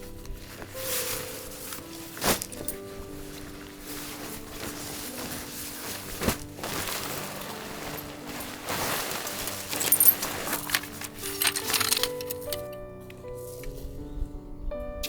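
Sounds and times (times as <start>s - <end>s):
rustling: 0.0s - 14.2s
soft background music: 0.0s - 15.0s
metallic clinks: 9.4s - 13.6s.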